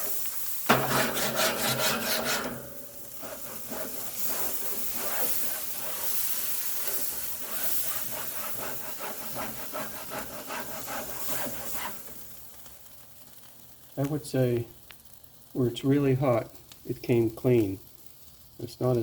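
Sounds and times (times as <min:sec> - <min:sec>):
brush scrubbing grill grates: 0:00.0 - 0:12.2
steam hissing on hot grill: 0:00.0 - 0:19.0.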